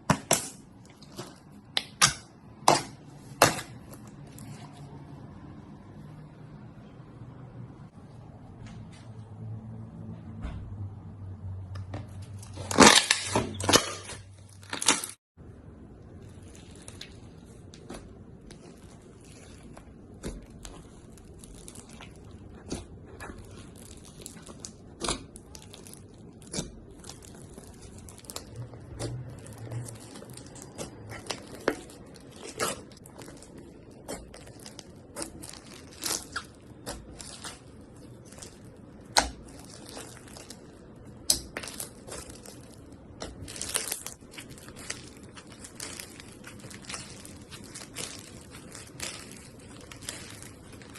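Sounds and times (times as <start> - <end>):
slime popping and crackling: 12.4 - 50.9.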